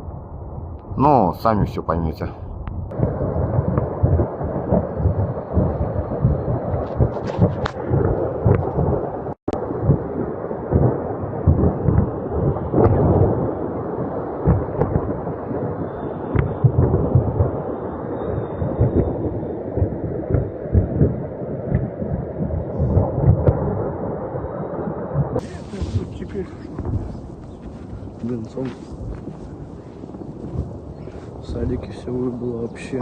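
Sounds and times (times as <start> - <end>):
distant explosions rumbling: 2.4 - 33.0
cracks and pops: 6.7 - 8.8, 12.8 - 13.1, 16.3 - 16.6.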